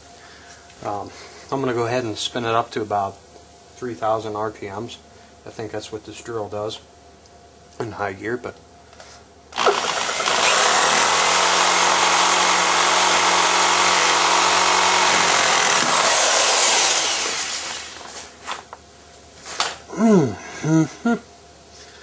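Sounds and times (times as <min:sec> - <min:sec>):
electric drill whirring: 0:09.6 - 0:18.3.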